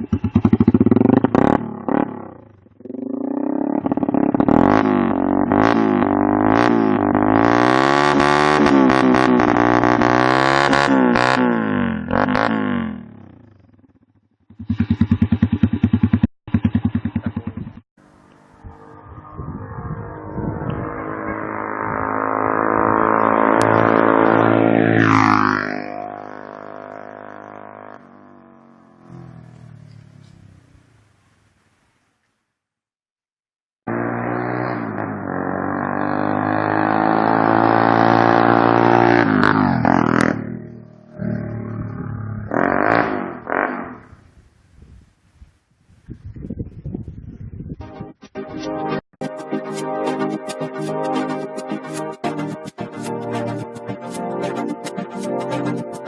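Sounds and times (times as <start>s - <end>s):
motorcycle engine idling and revving: 0.0s - 31.3s, 33.8s - 44.6s.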